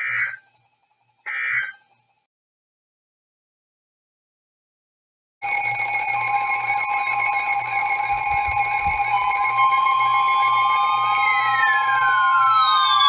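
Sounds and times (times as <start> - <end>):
siren sweeping up and down: 5.4 - 13.0
steady alarm tones: 5.4 - 13.0
warbling tone: 5.5 - 13.0.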